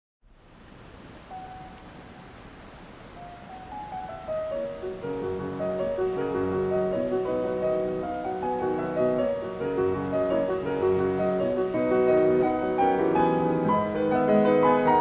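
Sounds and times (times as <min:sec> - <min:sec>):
piano music: 0:03.4 - 0:15.0.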